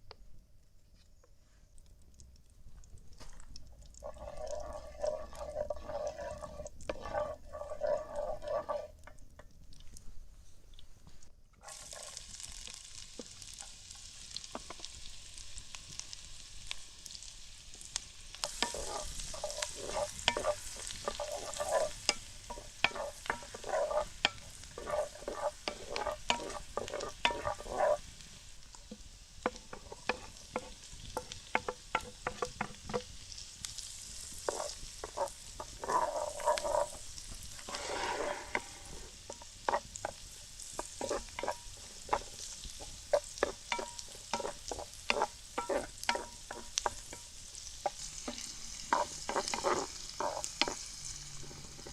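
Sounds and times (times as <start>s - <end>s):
shrimp sizzling in butter: 2.2s - 51.9s
utensil scraping cooking vessel: 4.0s - 9.2s, 11.6s - 12.3s, 18.4s - 51.9s.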